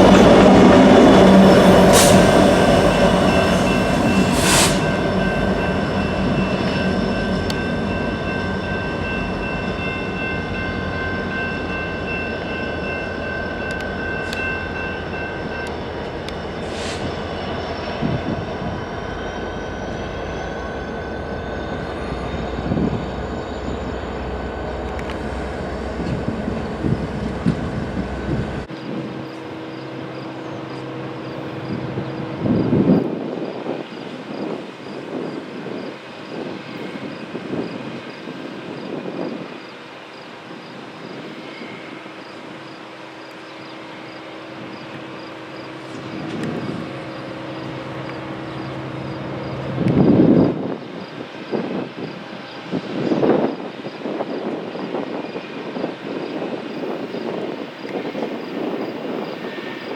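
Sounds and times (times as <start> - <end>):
freight train rumbling on rails: 0.0 - 59.9
high ringing from train wheels: 0.0 - 59.9.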